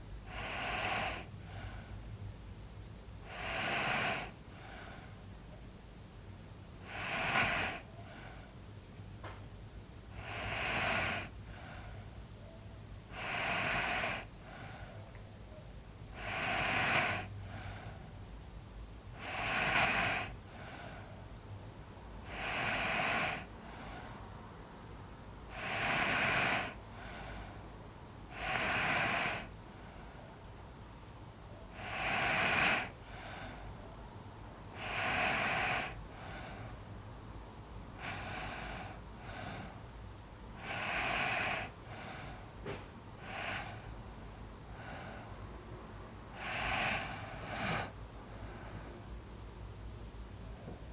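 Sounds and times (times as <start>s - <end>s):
person snoring: 19.2s - 20.3s, 22.3s - 23.5s, 25.5s - 26.8s, 28.3s - 29.5s, 31.8s - 32.9s, 34.8s - 36.0s, 40.6s - 41.7s, 46.4s - 47.9s.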